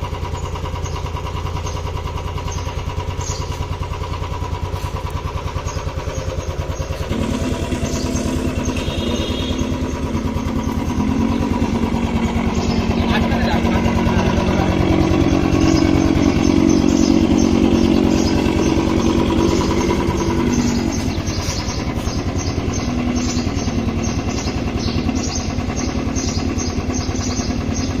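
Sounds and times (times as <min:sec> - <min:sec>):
motorcycle engine idling: 0:00.0 - 0:28.0
simulated motorcycle sound: 0:00.0 - 0:28.0
humming tone: 0:07.0 - 0:13.2.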